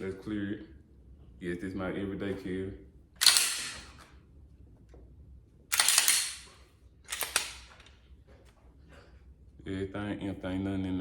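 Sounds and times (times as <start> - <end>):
pistol slide racked: 3.2 - 4.1, 5.7 - 8.0.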